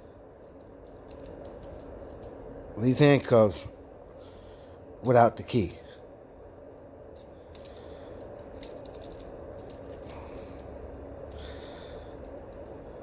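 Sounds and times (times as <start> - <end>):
faint steady hum: 0.0 - 13.0
metal handcuff chain clinking: 0.3 - 3.4, 7.2 - 13.0.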